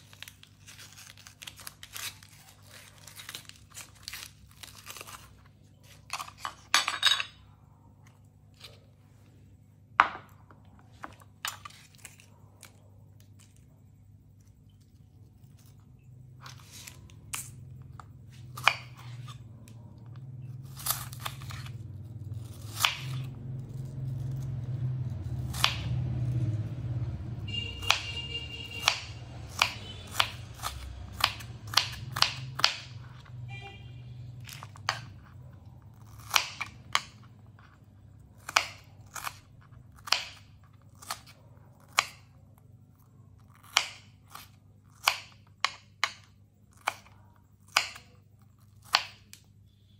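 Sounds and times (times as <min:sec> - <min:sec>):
knife chopping on a board: 0:25.5 - 0:25.9, 0:28.8 - 0:33.0, 0:38.4 - 0:39.4, 0:43.6 - 0:47.1, 0:47.7 - 0:48.1, 0:48.8 - 0:49.3.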